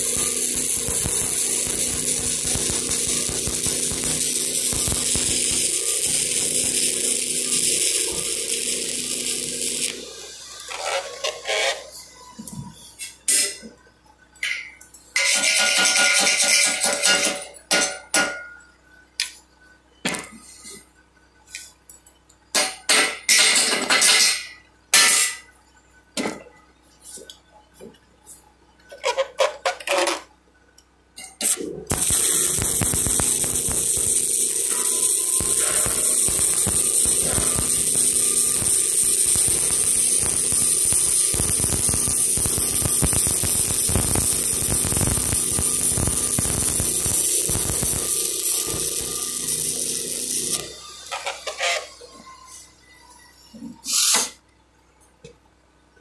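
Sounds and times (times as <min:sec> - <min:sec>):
welding arc crackling and buzzing: 0:00.0 - 0:12.0, 0:15.2 - 0:17.6, 0:31.2 - 0:52.8.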